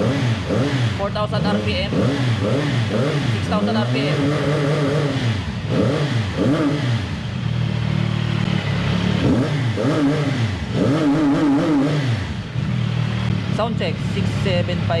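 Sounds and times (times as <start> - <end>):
engine revving and idling: 0.0 - 15.0.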